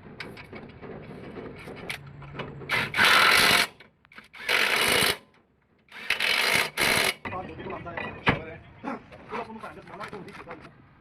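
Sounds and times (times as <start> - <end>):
workshop clatter: 6.8 - 10.6.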